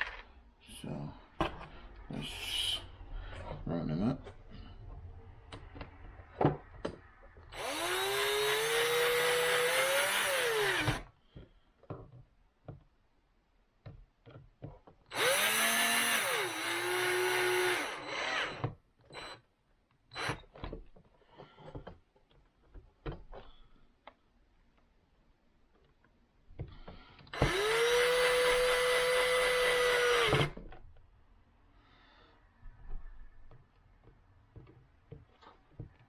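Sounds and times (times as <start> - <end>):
power drill driving screws: 7.5 - 11.1, 15.1 - 19.4, 20.1 - 20.6, 27.3 - 30.8.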